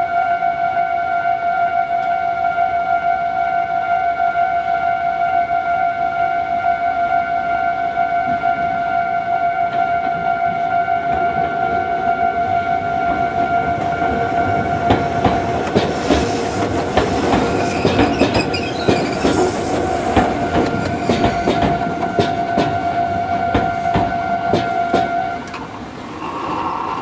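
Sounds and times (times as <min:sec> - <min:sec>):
level crossing alarm ringing: 0:00.0 - 0:25.8
train wheels clattering: 0:09.6 - 0:27.0.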